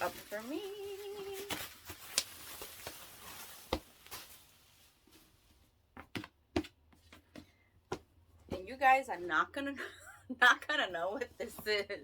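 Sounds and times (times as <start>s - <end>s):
packaging rustling: 0.0s - 5.4s.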